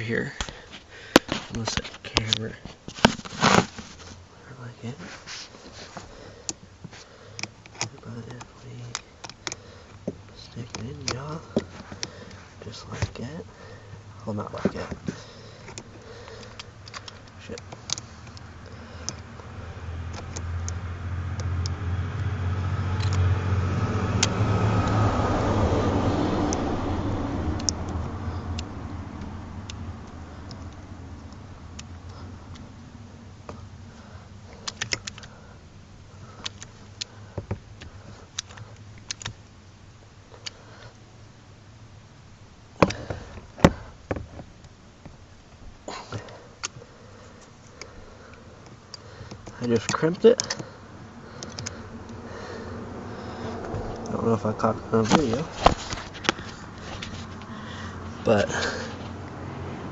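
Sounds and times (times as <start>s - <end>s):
motor vehicle passing by: 15.2s - 35.6s, 49.0s - 59.9s
sharp clicks: 23.0s - 23.3s, 27.5s - 32.8s, 34.4s - 35.4s, 36.2s - 40.9s, 44.6s - 52.3s.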